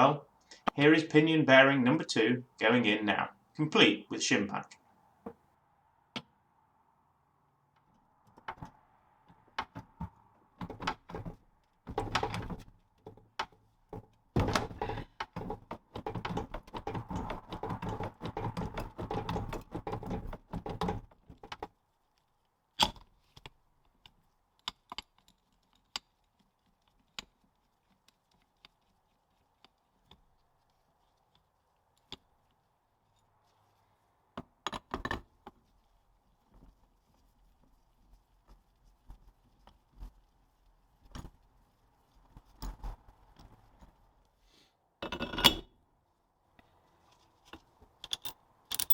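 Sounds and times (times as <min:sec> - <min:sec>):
tool clicks and knocks: 0:09.6 - 0:21.7
rapid tapping: 0:14.4 - 0:21.7.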